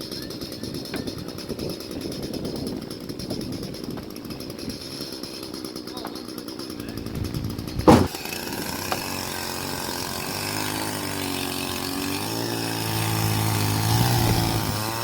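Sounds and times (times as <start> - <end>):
chainsaw engine running: 0.0 - 15.0
loud knock: 7.8 - 8.2.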